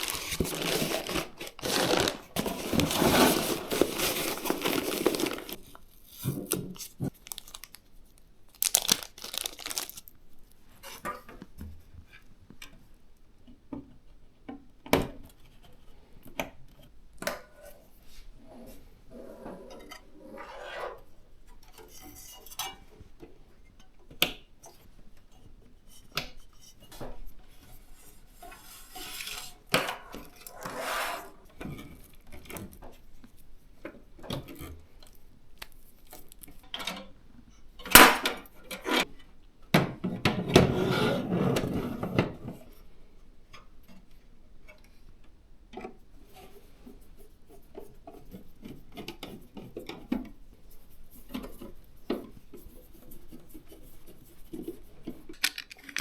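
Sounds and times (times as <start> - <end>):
clicks and knocks of plastic and metal: 0.0 - 5.7, 55.1 - 56.0
rustling and scraping: 0.0 - 12.3, 25.8 - 39.1, 45.8 - 56.0.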